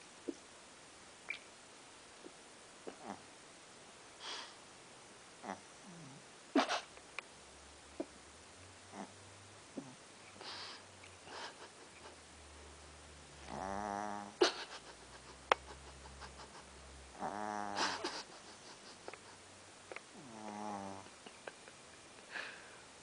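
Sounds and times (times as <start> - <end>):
person snoring: 13.5 - 14.4, 17.2 - 18.0, 20.2 - 21.0.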